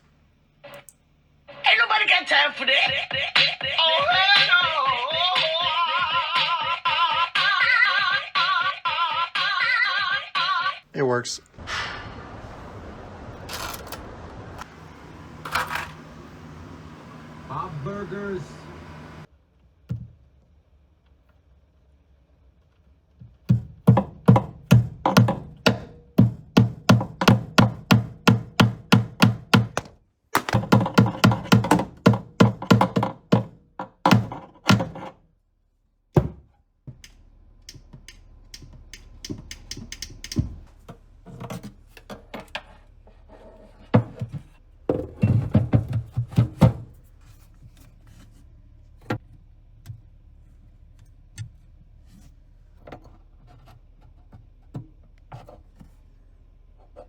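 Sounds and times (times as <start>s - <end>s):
sharp rhythmic thuds: 2.7s - 10.8s, 23.5s - 35.2s
low hum: 11.4s - 19.3s
scattered knocks: 23.8s - 35.2s.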